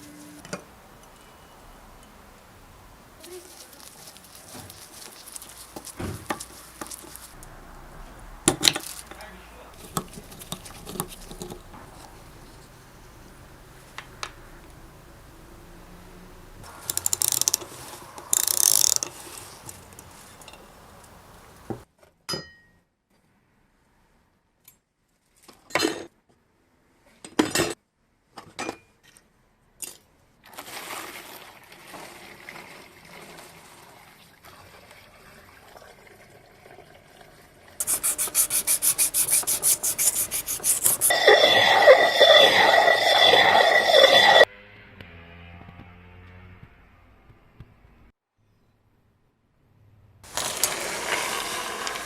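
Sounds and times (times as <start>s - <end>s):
scrubbing metal parts: 8.5s - 13.5s, 16.6s - 20.7s, 37.8s - 44.5s
fast even scraping: 8.7s - 13.0s, 37.8s - 44.5s.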